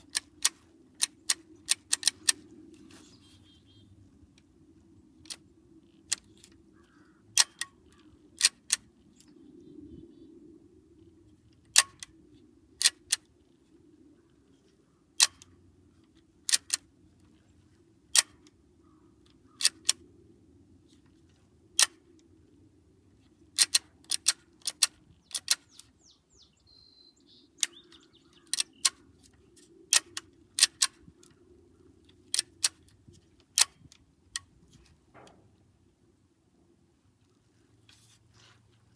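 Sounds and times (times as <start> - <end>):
pistol dry-fire clicks: 18.1 - 18.5, 19.5 - 20.0, 21.8 - 22.0, 23.6 - 25.9, 27.6 - 29.0, 29.9 - 31.4, 32.3 - 32.9.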